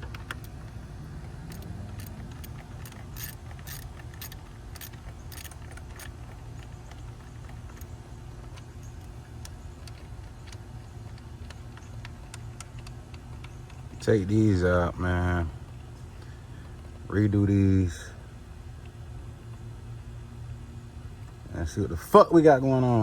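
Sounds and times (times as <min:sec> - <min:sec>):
low hum: 0:00.0 - 0:23.0
tools clinking: 0:00.1 - 0:10.6.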